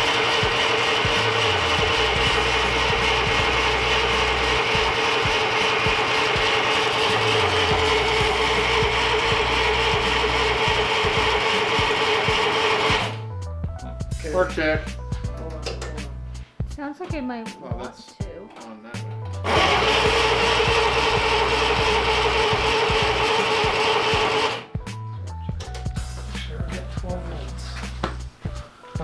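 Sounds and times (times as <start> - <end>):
mechanical whirring whine: 0.0 - 13.2, 19.5 - 24.7.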